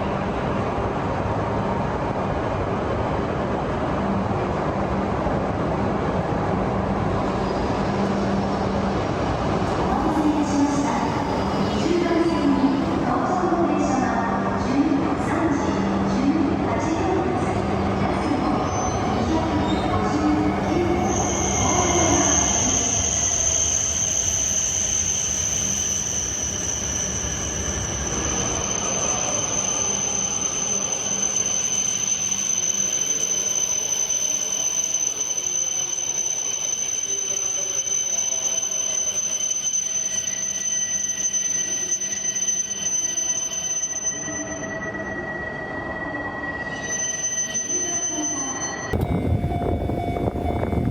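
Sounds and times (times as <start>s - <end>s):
train rumbling past: 0.0s - 31.0s, 49.0s - 50.9s
high-pitched whine: 14.3s - 50.9s.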